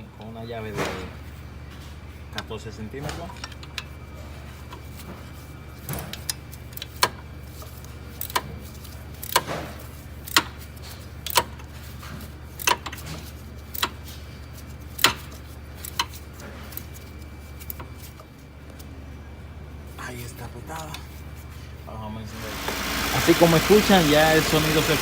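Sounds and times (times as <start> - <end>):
steady low hum: 22.3 - 25.0.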